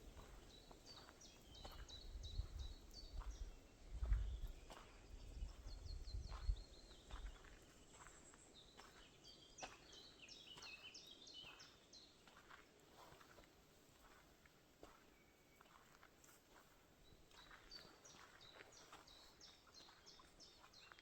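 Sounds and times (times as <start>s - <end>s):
songbirds singing: 0.0s - 21.0s
wind rumbling on microphone: 1.5s - 7.6s.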